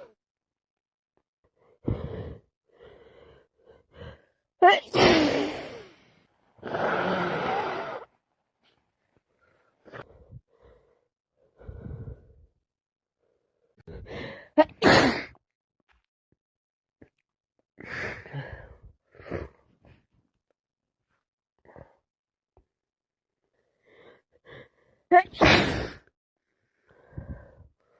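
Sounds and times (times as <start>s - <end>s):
woman sneezing: 4.6s - 5.9s, 14.6s - 15.3s, 25.2s - 26.0s.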